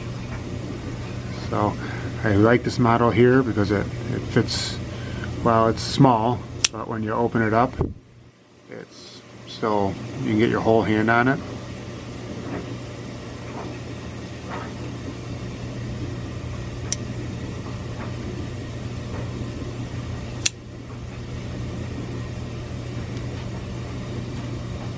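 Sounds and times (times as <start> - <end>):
steady low hum: 0.0 - 24.9
sharp clicks: 6.6 - 6.8.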